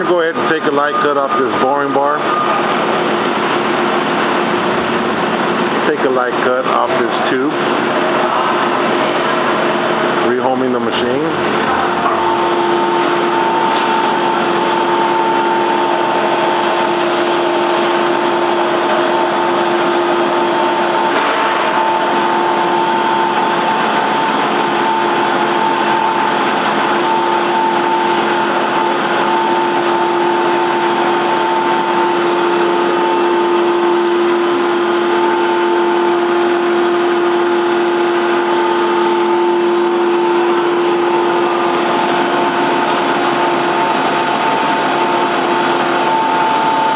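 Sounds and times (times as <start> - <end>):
lathe machine hum: 0.0 - 46.9
steady whining tones: 0.0 - 46.9.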